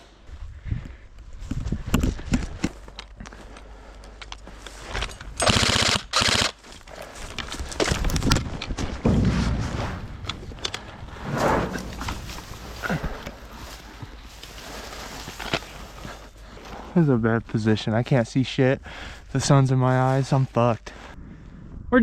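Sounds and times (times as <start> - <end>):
airsoft gun full-auto bursts: 5.4 - 6.6
knocks and rustling: 7.1 - 16.1.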